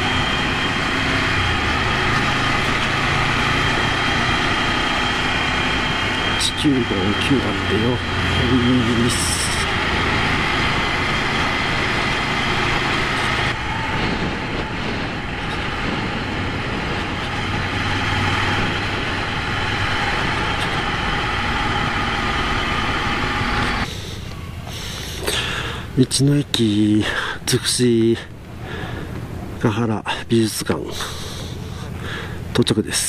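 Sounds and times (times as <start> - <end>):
motorcycle engine running: 0.0 - 26.0
wind on microphone: 10.3 - 22.1.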